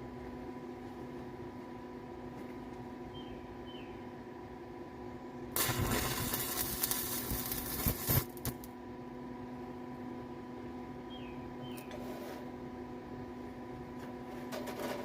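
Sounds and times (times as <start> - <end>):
welding arc crackling: 5.6 - 8.7.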